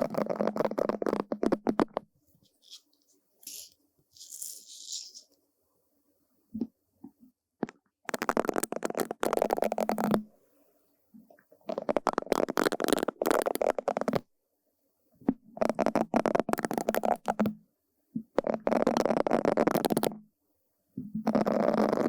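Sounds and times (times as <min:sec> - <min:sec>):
bristle brush sweeping: 0:02.3 - 0:05.4.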